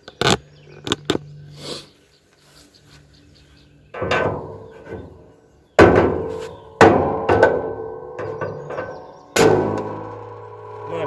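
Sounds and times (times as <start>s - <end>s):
ringing metal clanks: 4.0s - 11.0s.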